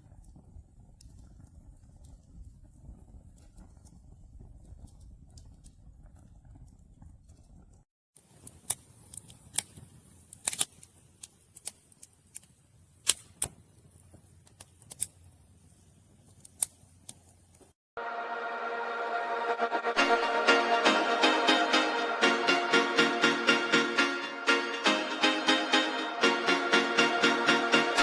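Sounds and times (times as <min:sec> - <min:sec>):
electronic music: 0:18.0 - 0:28.0.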